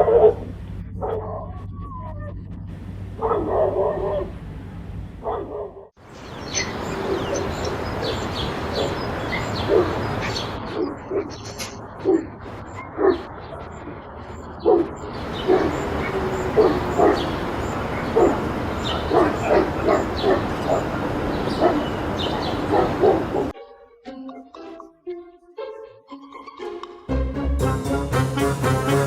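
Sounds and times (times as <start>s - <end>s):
dog barking: 0.0s - 1.6s, 3.2s - 4.3s, 5.2s - 5.9s, 6.5s - 14.0s, 14.6s - 23.6s.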